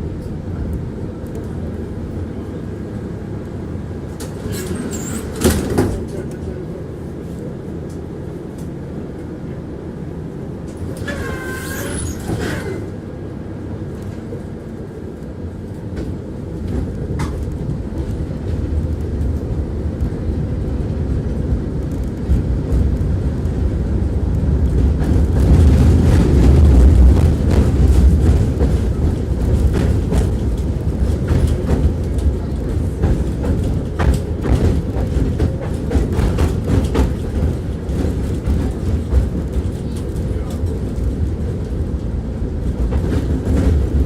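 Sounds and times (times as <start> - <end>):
tram wheels rumbling: 0.0 - 44.0
high wheel squeal: 4.5 - 5.4, 11.0 - 13.0.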